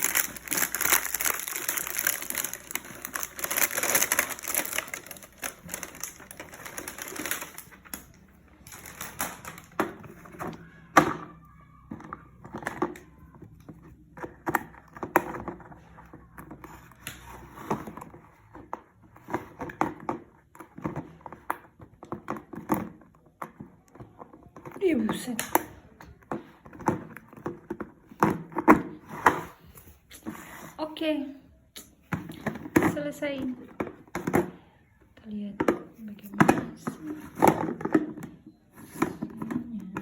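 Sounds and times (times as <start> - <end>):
packaging crinkling: 0.0 - 9.8.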